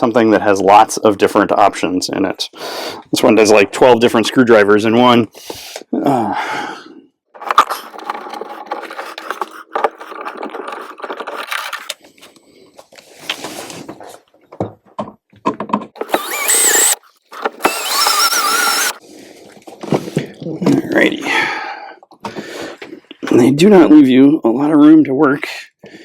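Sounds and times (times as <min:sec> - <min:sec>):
screwdriver scraping and clicking: 0:16.0 - 0:19.0
screws squeaky grinding: 0:16.0 - 0:19.0.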